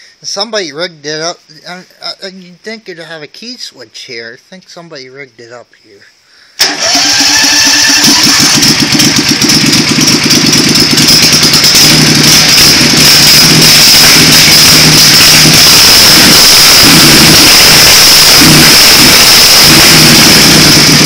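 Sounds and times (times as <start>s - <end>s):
lawn mower engine running loud: 6.6s - 21.0s.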